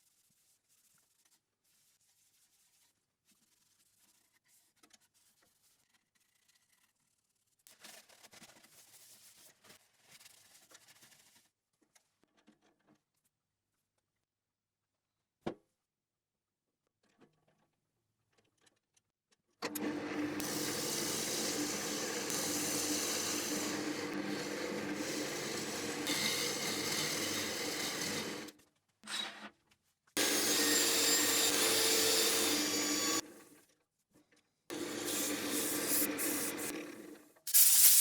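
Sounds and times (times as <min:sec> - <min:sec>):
tool cutting spinning wood: 0:19.6 - 0:28.5, 0:30.2 - 0:33.5, 0:34.7 - 0:38.0
wood lathe motor hum: 0:19.6 - 0:28.5, 0:30.2 - 0:33.2, 0:34.7 - 0:37.2.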